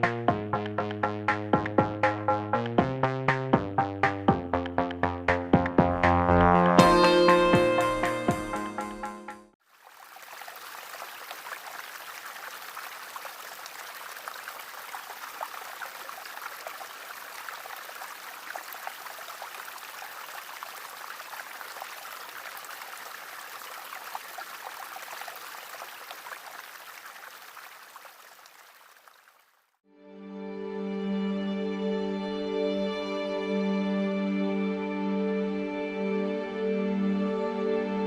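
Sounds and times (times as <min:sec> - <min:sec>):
running water splashing: 0:09.6 - 0:29.8.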